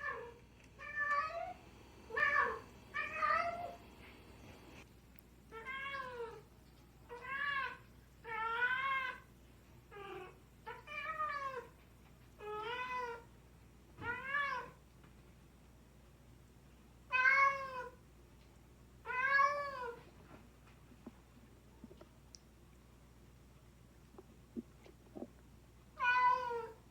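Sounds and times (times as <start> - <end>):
cats meowing: 0.0 - 3.8, 26.0 - 26.8.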